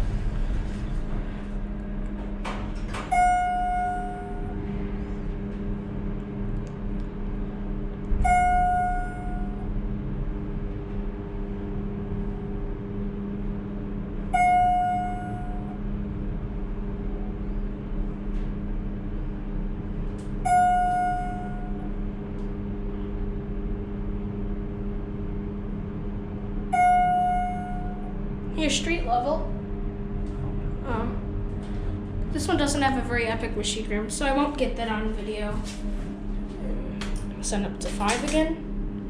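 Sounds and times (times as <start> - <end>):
elevator humming: 0.0 - 39.0
electronic elevator chime: 3.1 - 4.6, 8.2 - 9.7, 14.3 - 15.8, 20.4 - 21.9, 26.7 - 28.2.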